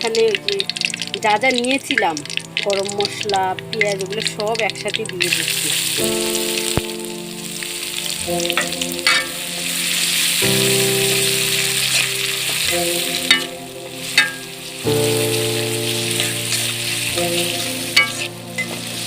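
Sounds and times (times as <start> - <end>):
background music with chords: 0.0 - 19.0
onion and spices sizzling in oil: 0.0 - 19.0
spoon clicking against pan: 13.3 - 13.6, 18.0 - 18.8.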